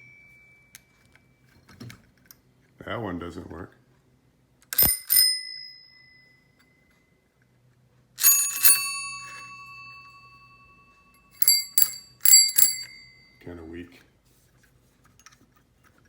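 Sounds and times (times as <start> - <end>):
bicycle bell ringing: 4.8 - 6.6, 8.2 - 13.4.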